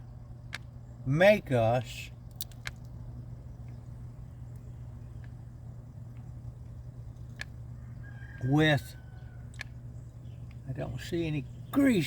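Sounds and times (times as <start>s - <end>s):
low mechanical hum: 0.0s - 12.0s
faint clicks: 2.3s - 2.9s, 9.5s - 9.8s.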